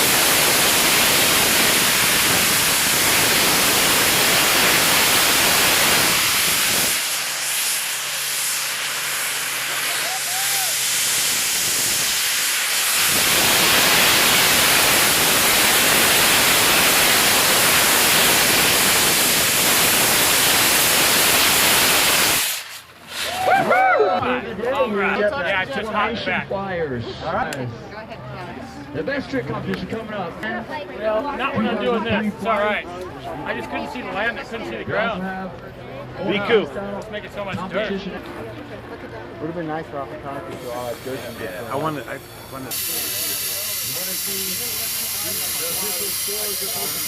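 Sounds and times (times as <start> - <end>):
rocket exhaust rushing hiss: 0.0 - 23.8, 40.5 - 47.0.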